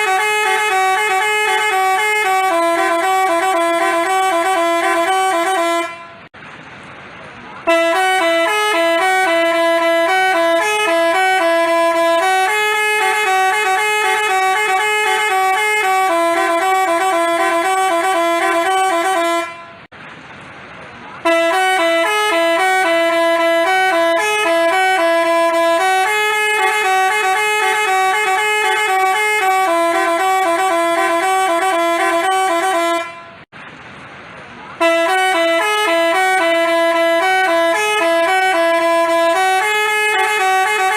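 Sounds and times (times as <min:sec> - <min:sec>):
multi-tone bus horn tune: 0:00.0 - 0:06.4, 0:07.6 - 0:19.9, 0:21.2 - 0:33.5, 0:34.8 - 0:40.9.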